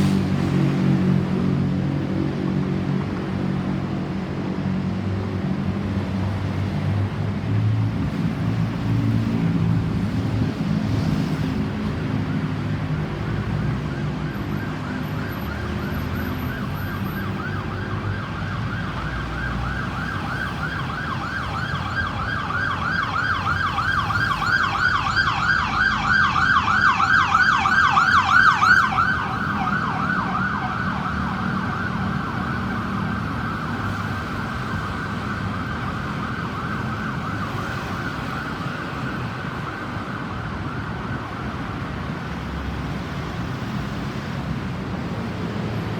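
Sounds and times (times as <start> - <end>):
ambulance siren: 10.4 - 44.4.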